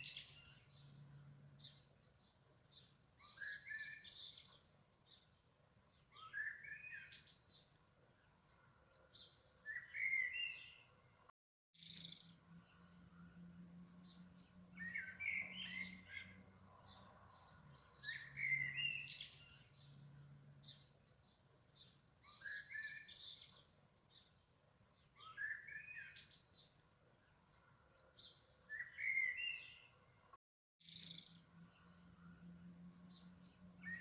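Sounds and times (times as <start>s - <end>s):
faint bird chirps: 0.0s - 11.0s, 14.0s - 30.0s.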